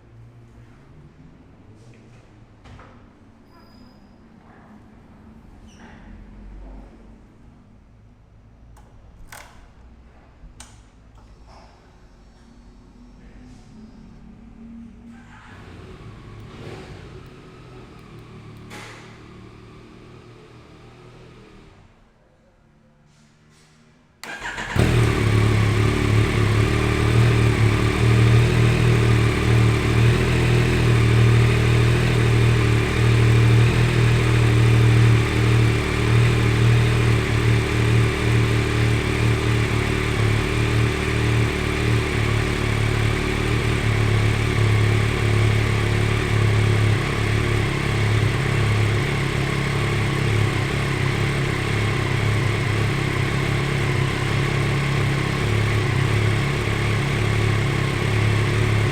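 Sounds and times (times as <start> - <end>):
motorcycle engine idling: 24.3 - 58.9.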